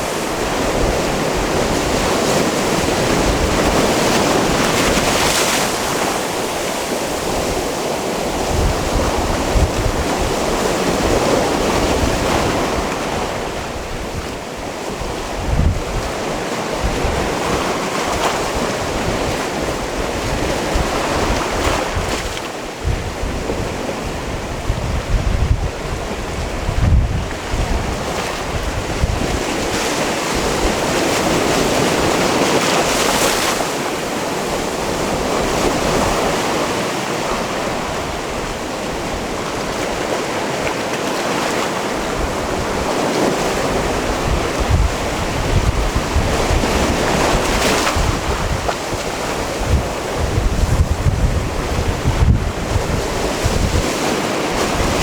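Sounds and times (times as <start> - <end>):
waves surging against rocky shore: 0.0 - 55.0
wind buffeting microphone: 0.0 - 55.0.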